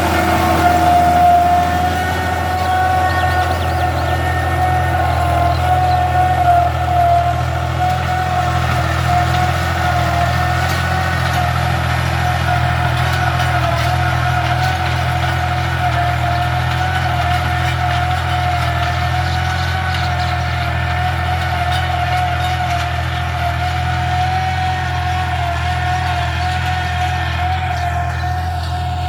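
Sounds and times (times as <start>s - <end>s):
steady whine: 0.0s - 13.0s
tractor engine running: 0.0s - 29.0s.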